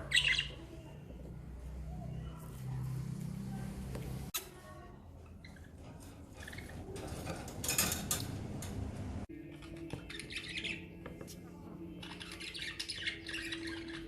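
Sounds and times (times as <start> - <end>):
budgies chirping: 0.0 - 0.8, 5.4 - 7.4, 9.5 - 11.0, 12.0 - 14.0.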